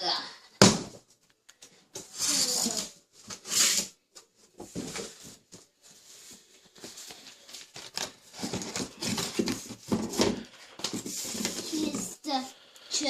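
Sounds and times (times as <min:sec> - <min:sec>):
cardboard packaging rustling: 0:02.1 - 0:12.2.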